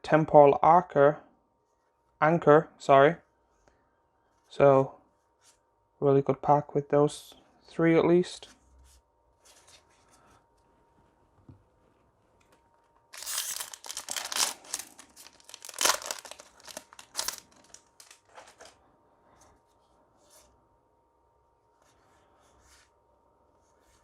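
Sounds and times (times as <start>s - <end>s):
foil wrapper crinkling and tearing: 13.1s - 18.8s.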